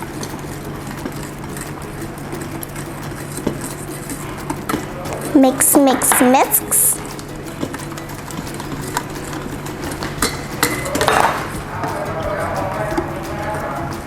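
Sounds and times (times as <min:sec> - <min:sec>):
stirring batter in bowl: 0:00.0 - 0:14.0
utensil clinking against bowl: 0:00.0 - 0:14.0.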